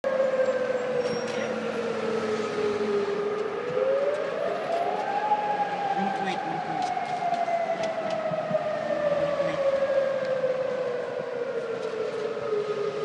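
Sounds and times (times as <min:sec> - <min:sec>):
warning siren wailing: 0:00.0 - 0:13.0.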